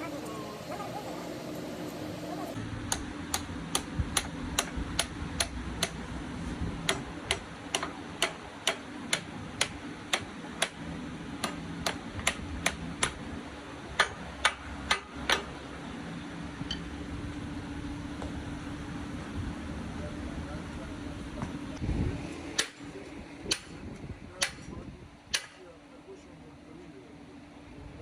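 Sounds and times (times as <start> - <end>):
steady machine hum: 0.0 - 24.3
hammer tapping on metal: 2.9 - 6.0, 6.8 - 10.8, 14.0 - 15.5, 23.5 - 23.8, 24.4 - 24.7, 25.3 - 25.6.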